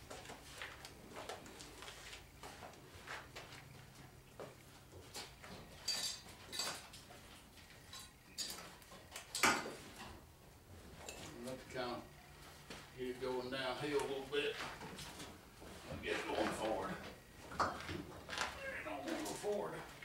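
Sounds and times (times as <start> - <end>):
metal clinks and knocks: 5.0 - 10.2.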